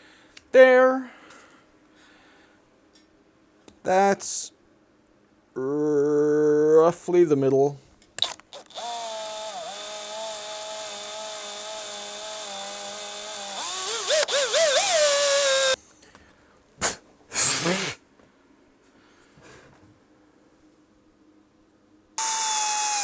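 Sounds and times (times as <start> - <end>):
power tool motor whining: 8.2 - 15.8, 22.2 - 23.0
short hissing bursts: 16.8 - 18.0.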